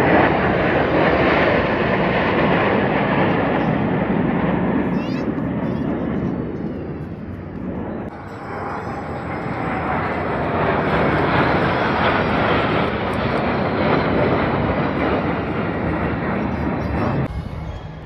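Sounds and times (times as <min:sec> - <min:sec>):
jet aircraft flying past: 0:00.0 - 0:18.0
faint falling whine: 0:14.7 - 0:18.0.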